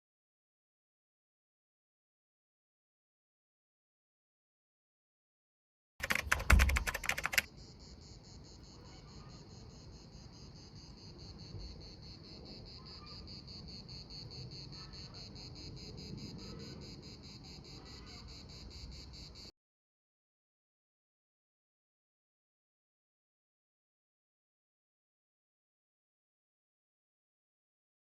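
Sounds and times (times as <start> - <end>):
crickets chirping: 6.4 - 19.5.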